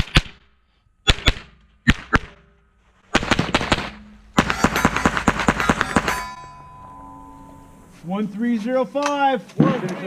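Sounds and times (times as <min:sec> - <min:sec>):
rapid rifle fire: 0:03.1 - 0:06.2
steel plates ringing: 0:03.9 - 0:08.3.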